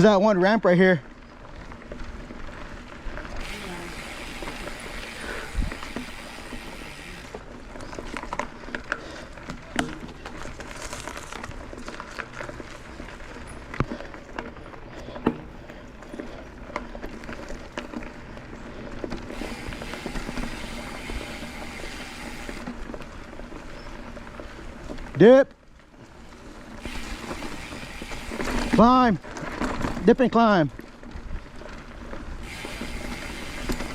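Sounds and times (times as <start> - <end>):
bike tyres rolling on dirt: 0.0 - 33.9
bike clicks and knocks: 3.4 - 25.2.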